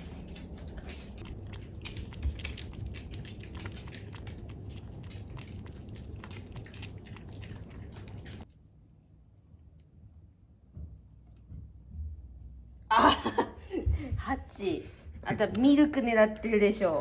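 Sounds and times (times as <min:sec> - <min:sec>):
pet lapping milk: 0:00.0 - 0:08.5.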